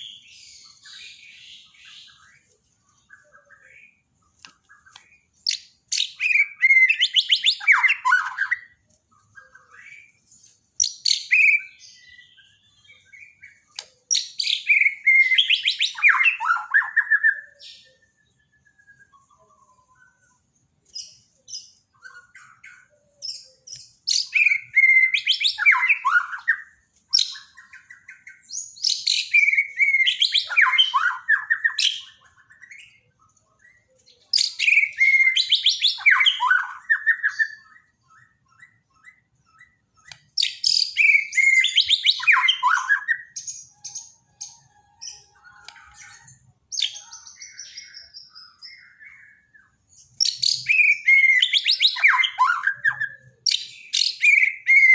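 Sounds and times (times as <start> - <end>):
soft bird chirps: 0.0 - 54.9
songbird singing descending phrases: 0.0 - 54.9.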